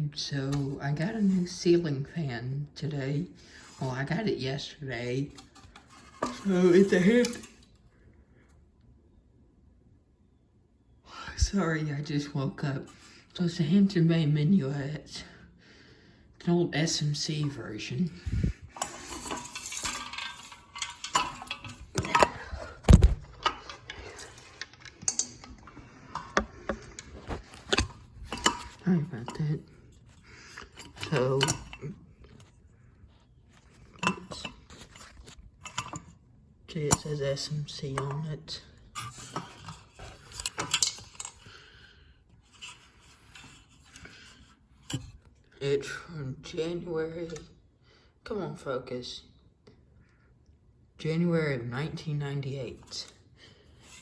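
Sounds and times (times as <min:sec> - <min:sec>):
rubbing and rustling: 0:18.2 - 0:36.1
ceiling fan clinking and knocking: 0:18.3 - 0:29.6.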